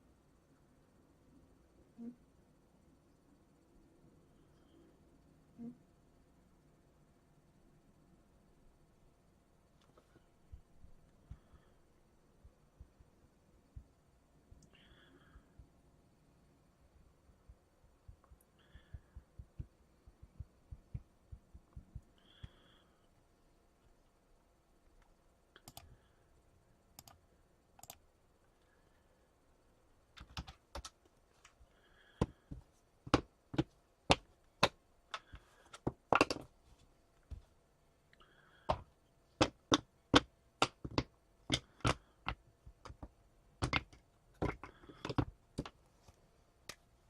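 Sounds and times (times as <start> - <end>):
computer keyboard typing: 27.8 - 28.0, 30.2 - 31.0.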